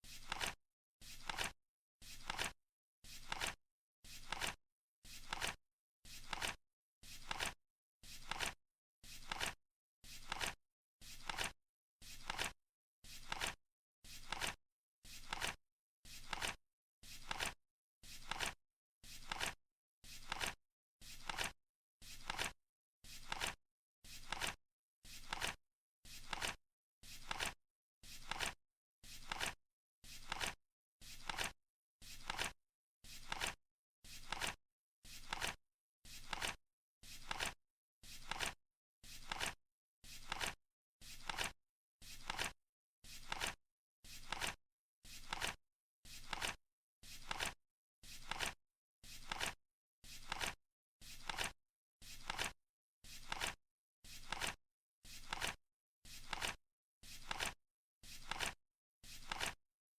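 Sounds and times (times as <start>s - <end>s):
flip clock cards flapping: 0.2s - 0.6s, 1.2s - 1.5s, 2.2s - 2.5s, 3.2s - 3.6s, 4.2s - 4.6s, 5.2s - 5.6s, 6.2s - 6.6s, 7.2s - 7.6s, 9.2s - 9.6s, 10.2s - 10.6s, 11.2s - 11.5s, 12.2s - 12.5s, 14.2s - 14.6s, 15.2s - 15.6s, 16.2s - 16.6s, 17.2s - 17.6s, 19.2s - 19.6s, 20.2s - 20.6s, 21.2s - 21.5s, 22.2s - 22.5s, 23.2s - 23.6s, 24.2s - 24.6s, 25.2s - 25.6s, 26.2s - 26.6s, 27.2s - 27.6s, 28.2s - 28.6s, 29.2s - 29.6s, 30.2s - 30.6s, 31.2s - 31.5s, 32.2s - 32.5s, 33.2s - 33.6s, 34.2s - 34.6s, 35.2s - 35.6s, 36.2s - 36.6s, 37.2s - 37.6s, 38.2s - 38.6s, 39.2s - 39.6s, 40.2s - 40.6s, 41.2s - 41.5s, 42.2s - 42.5s, 43.2s - 43.6s, 44.2s - 44.6s, 45.2s - 45.6s, 46.2s - 46.6s, 49.2s - 49.6s, 50.2s - 50.5s, 51.2s - 51.5s, 52.2s - 52.5s, 53.2s - 53.6s, 54.2s - 54.6s, 55.2s - 55.6s, 56.2s - 56.6s, 57.2s - 57.6s, 58.2s - 58.6s, 59.2s - 59.6s.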